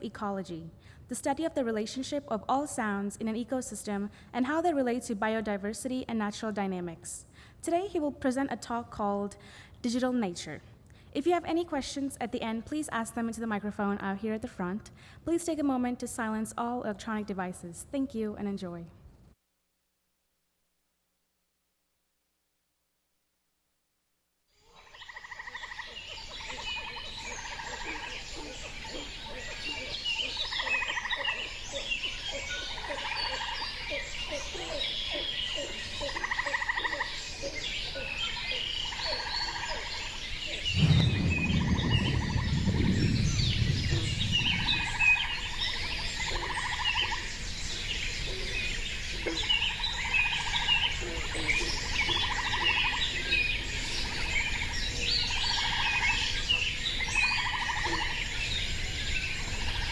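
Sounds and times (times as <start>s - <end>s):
birds chirping and singing: 25.0s - 59.9s
pulsed bird call: 40.5s - 47.1s
low rumble: 40.6s - 46.5s.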